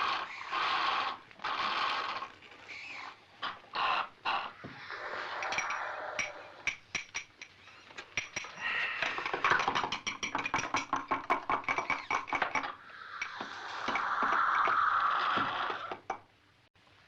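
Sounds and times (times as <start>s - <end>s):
hiss: 12.8s - 16.0s.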